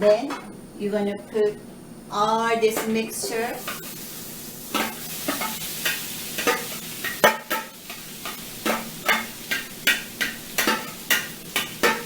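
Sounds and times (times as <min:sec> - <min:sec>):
tofu sizzling in frying pan: 0:03.3 - 0:12.0.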